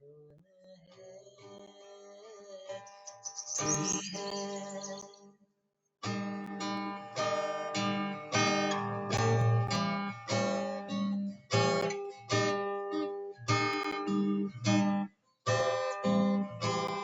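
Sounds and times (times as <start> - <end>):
acoustic guitar strumming chords: 6.1 - 17.0.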